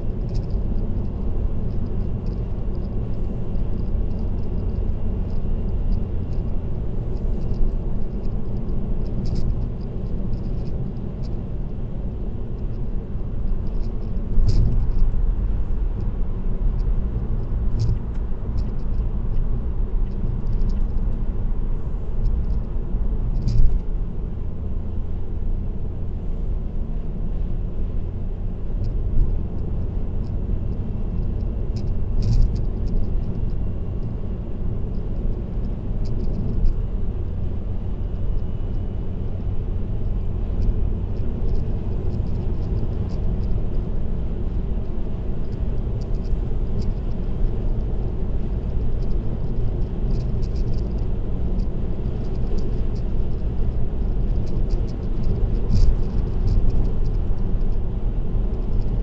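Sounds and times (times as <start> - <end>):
car road noise in cabin: 0.0 - 59.0.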